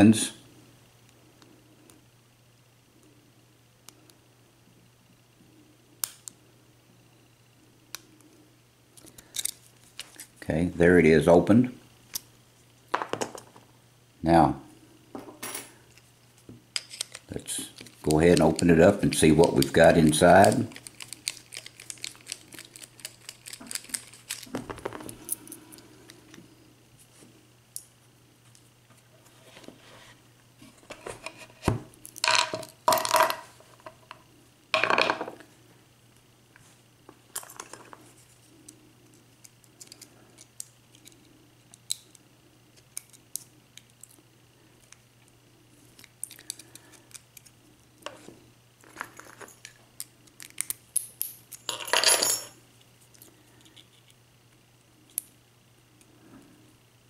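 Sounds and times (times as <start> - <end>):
padlock being taken apart: 16.7 - 18.4, 20.4 - 25.4.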